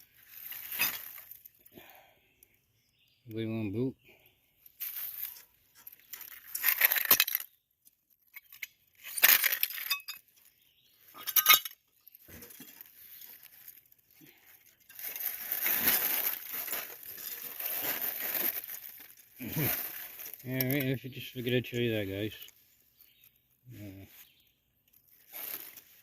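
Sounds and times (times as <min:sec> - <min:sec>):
rough scraping and rustling: 0:00.0 - 0:01.6, 0:04.7 - 0:07.4, 0:08.4 - 0:26.0
glass and metal debris clinking: 0:00.4 - 0:01.4, 0:05.2 - 0:07.5, 0:08.3 - 0:10.5, 0:11.1 - 0:13.8, 0:14.8 - 0:20.4.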